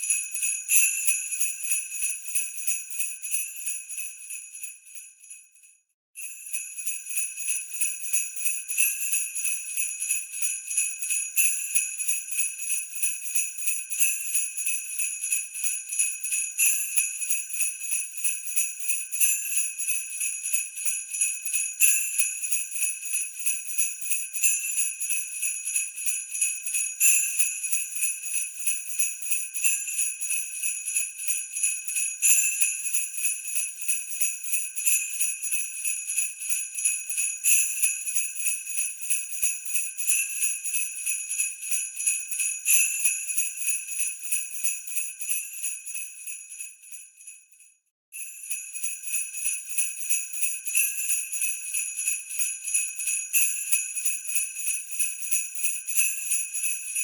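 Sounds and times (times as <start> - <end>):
sleigh bells jingling: 52.0 - 57.0.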